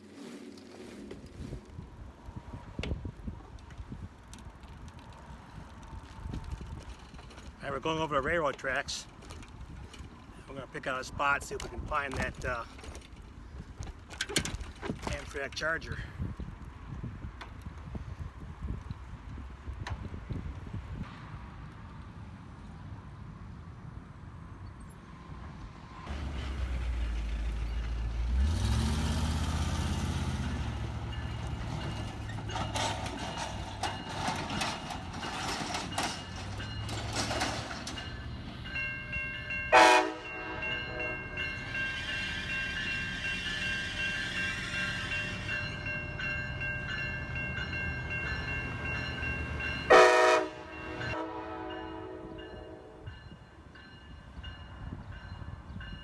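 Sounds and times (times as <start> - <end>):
wheels clattering on rails: 2.3 - 16.6, 26.1 - 51.2
locomotive engine rumble: 26.1 - 53.1
train horn: 39.7 - 41.4, 49.9 - 53.1.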